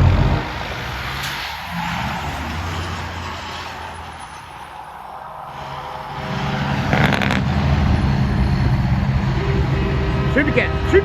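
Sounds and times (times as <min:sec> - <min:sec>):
truck engine running: 0:00.0 - 0:01.1, 0:05.7 - 0:11.0.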